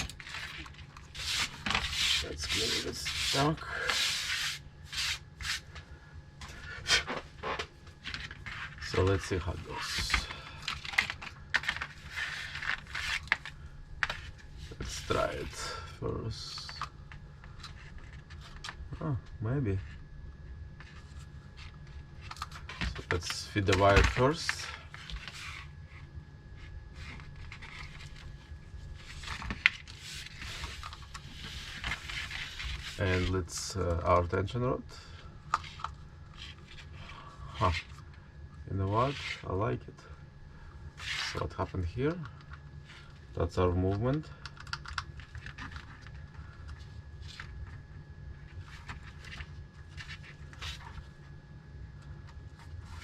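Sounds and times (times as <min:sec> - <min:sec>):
handling and scraping noises: 0:00.0 - 0:19.1, 0:19.7 - 0:34.3, 0:35.1 - 0:39.7, 0:41.0 - 0:51.4, 0:52.0 - 0:53.0
steady low hum: 0:00.0 - 0:53.0
plastic parts clicking and scraping: 0:35.5 - 0:36.9.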